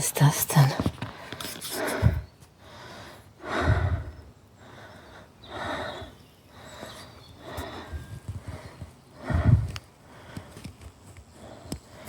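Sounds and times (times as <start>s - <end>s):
person breathing heavily: 1.0s - 12.0s.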